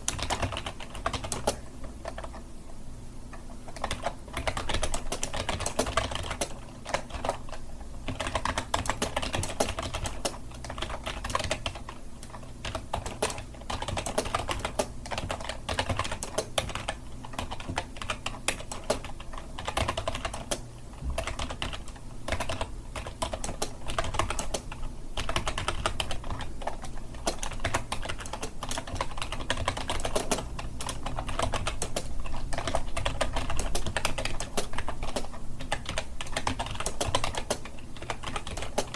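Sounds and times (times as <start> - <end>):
fast typing on keyboard: 0.0 - 2.4, 3.6 - 38.9.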